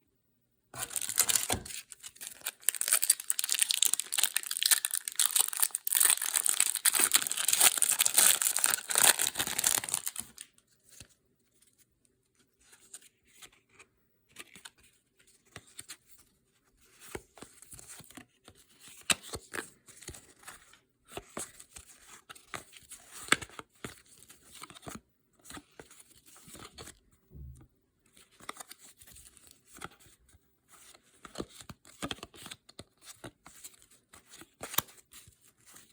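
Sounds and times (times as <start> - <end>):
wrapper tearing and crinkling: 0.8 - 10.4
cards rustling and clicking: 0.8 - 11.2, 28.1 - 30.2, 30.8 - 35.9.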